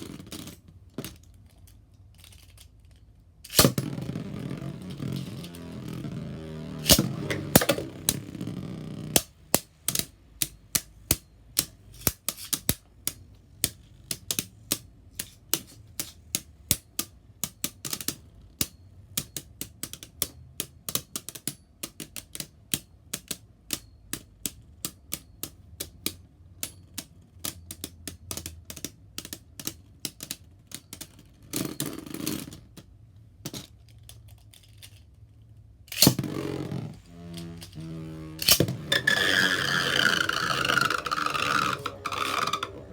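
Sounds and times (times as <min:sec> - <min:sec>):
spinning tops clicking together: 0:06.7 - 0:08.2, 0:35.9 - 0:42.9.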